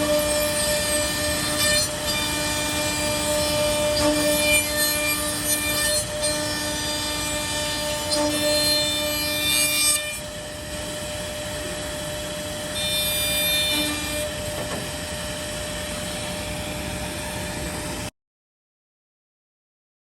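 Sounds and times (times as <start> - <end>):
cutter milling wood: 0.0 - 15.1
machine spindle whine: 0.0 - 18.1.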